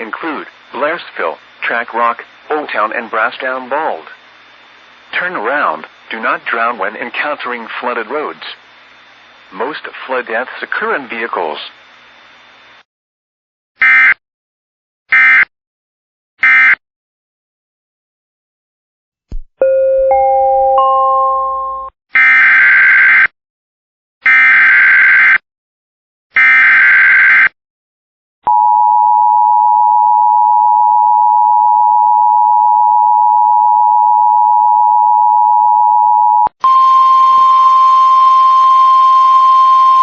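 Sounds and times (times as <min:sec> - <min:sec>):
two-tone attention signal: 0:36.6 - 0:40.0.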